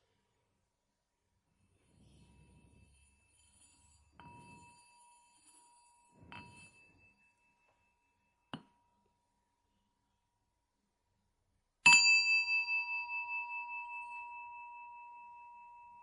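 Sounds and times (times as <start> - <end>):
small bell ringing: 1.9 - 9.2, 11.9 - 16.0.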